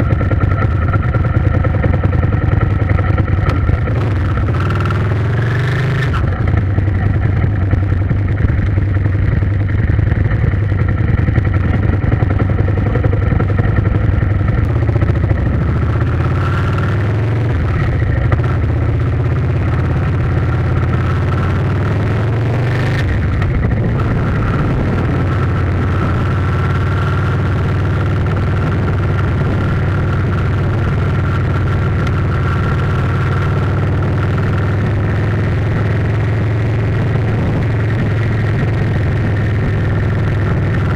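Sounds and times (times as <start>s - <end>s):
engine running: 0.0s - 40.9s.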